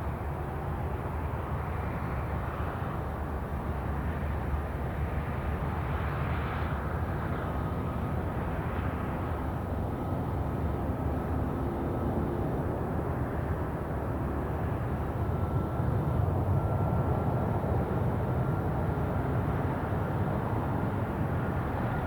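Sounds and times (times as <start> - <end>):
jet airliner engines rumbling: 0.0 - 22.0.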